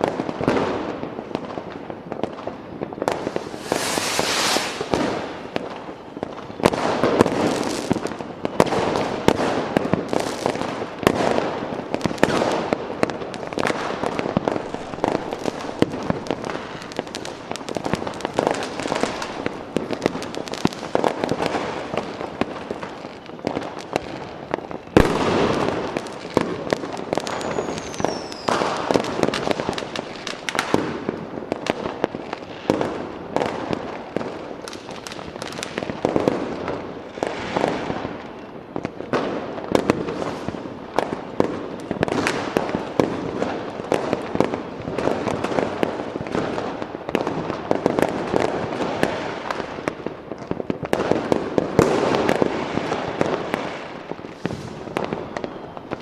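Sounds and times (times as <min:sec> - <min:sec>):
fireworks bangs and crackling: 0:00.0 - 0:56.0
firework falling whistle: 0:03.0 - 0:07.0, 0:27.2 - 0:29.0, 0:53.7 - 0:56.0.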